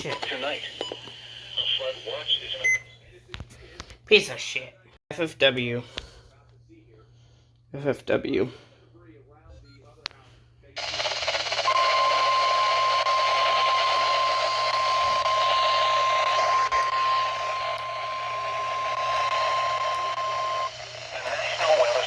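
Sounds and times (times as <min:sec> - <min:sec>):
loud radio static: 0:00.0 - 0:03.4, 0:10.7 - 0:22.0
steady alarm beep tone: 0:11.2 - 0:20.7.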